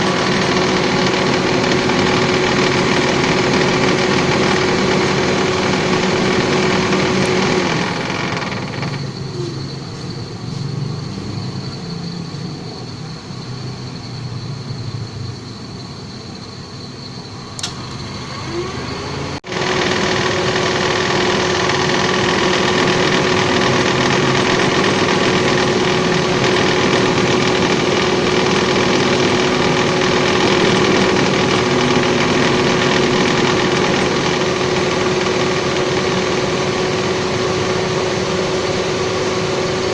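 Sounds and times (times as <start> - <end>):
car engine idling: 0.0 - 9.0
radiator fan growling: 0.0 - 10.1, 17.5 - 39.9.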